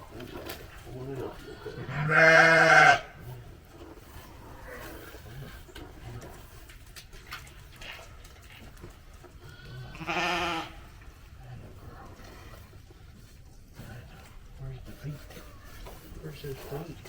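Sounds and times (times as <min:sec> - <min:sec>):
faint rustles: 0:00.0 - 0:17.0
sheep bleating: 0:01.7 - 0:03.2, 0:09.8 - 0:10.8.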